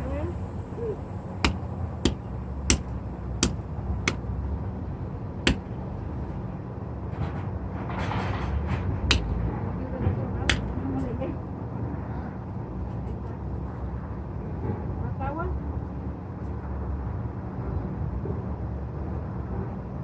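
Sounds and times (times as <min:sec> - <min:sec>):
steady low hum: 0:00.0 - 0:12.8
sharp taps: 0:01.4 - 0:04.2, 0:05.5 - 0:05.7, 0:09.1 - 0:09.3.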